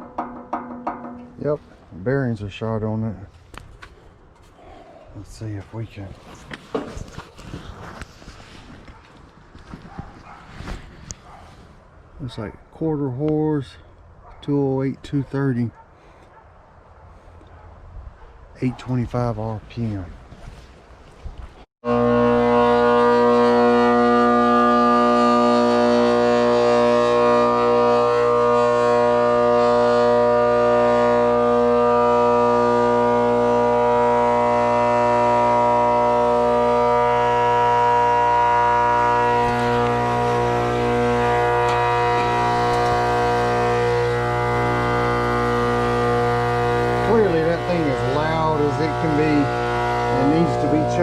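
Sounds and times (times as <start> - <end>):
fan motor howling: 21.9 - 51.0.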